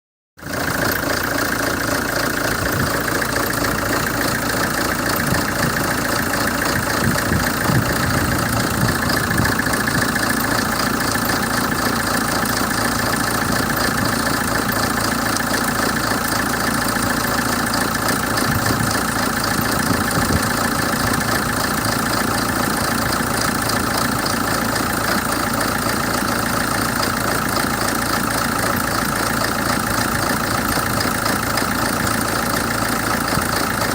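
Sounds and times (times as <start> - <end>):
diesel engine idling rough: 0.4 - 33.9.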